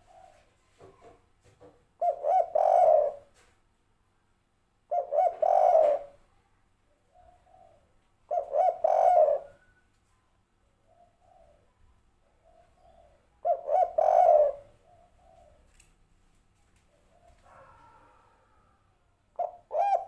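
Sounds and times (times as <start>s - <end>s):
dove cooing: 0.0s - 0.7s, 2.0s - 3.5s, 4.9s - 6.2s, 7.1s - 9.8s, 10.9s - 11.8s, 12.4s - 15.7s, 16.9s - 18.7s, 19.4s - 20.0s.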